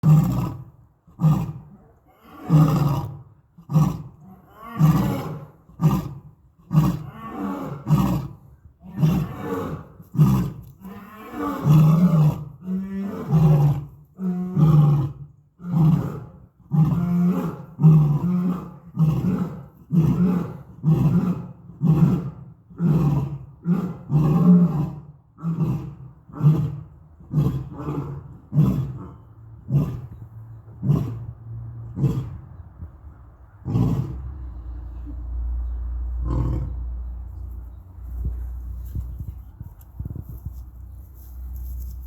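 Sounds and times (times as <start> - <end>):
lion roaring: 0.0 - 30.2, 33.6 - 34.3, 36.2 - 36.8.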